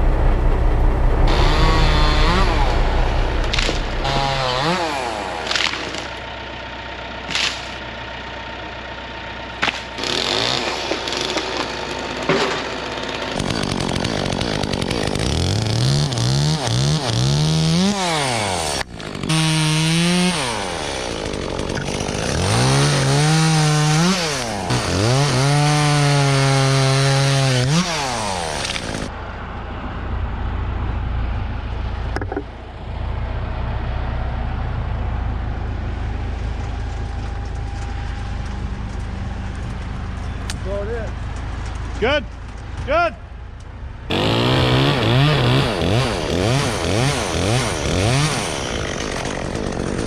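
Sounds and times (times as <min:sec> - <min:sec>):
chainsaw revving: 0:01.3 - 0:06.4, 0:09.5 - 0:29.1, 0:44.1 - 0:50.0.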